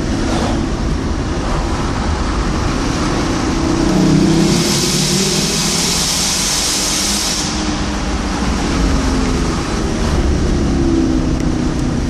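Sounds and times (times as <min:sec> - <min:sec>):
loud hiss: 0:04.0 - 0:08.3.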